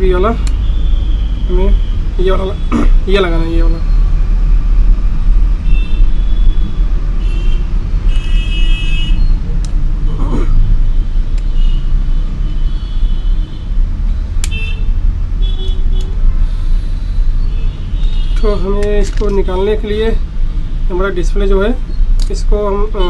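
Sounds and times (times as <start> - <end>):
steady low rumble: 0.0 - 11.4.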